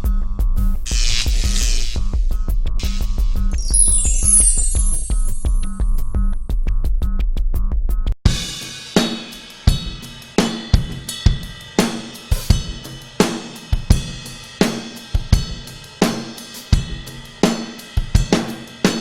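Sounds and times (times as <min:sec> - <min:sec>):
drum kit steady beat: 0:08.3 - 0:19.0.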